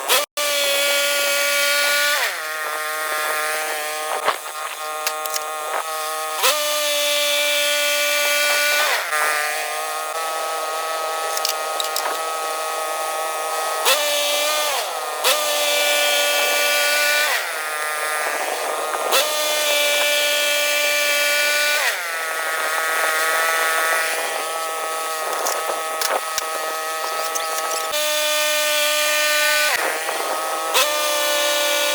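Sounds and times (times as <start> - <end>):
bandsaw mill cutting log: 0.0 - 31.9
sharp ticks: 25.3 - 28.0.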